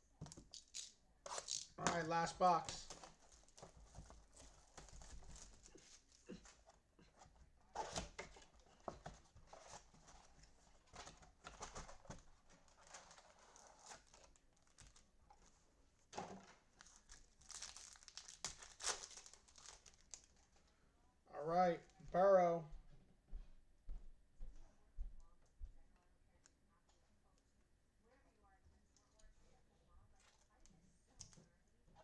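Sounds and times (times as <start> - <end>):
plastic and foil wrapping crinkling: 0.2 - 6.6, 7.7 - 15.6, 16.2 - 20.8.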